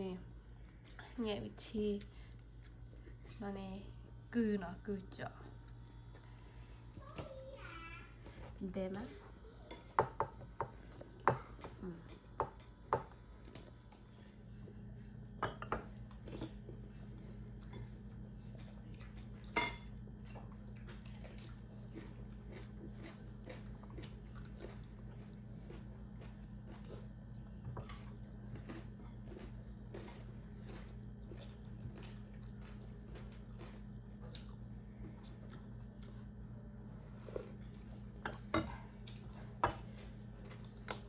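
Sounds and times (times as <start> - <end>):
steady low hum: 0.0 - 41.0
cutlery clinking against dishes: 19.4 - 20.0.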